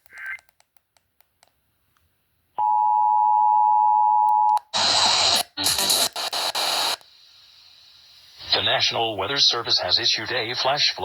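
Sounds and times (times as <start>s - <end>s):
loud hissing noise: 4.8s - 11.0s.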